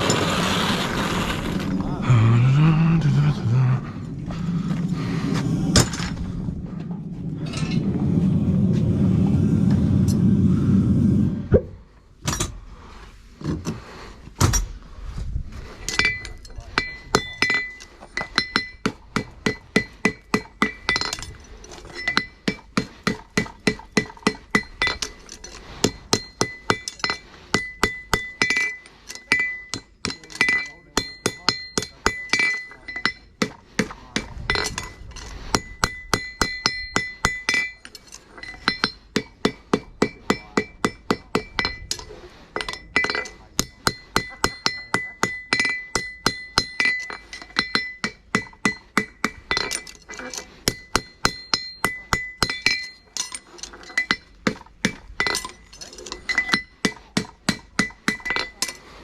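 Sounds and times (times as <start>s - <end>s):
hammer ringing on anvil: 26.1s - 33.2s, 42.6s - 49.9s.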